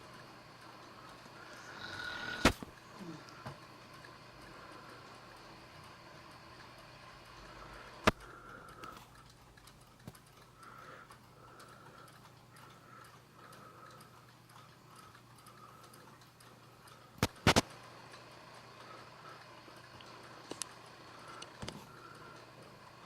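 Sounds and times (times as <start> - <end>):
woman snoring softly: 1.4 - 3.6
sharp clicks: 8.0 - 18.2.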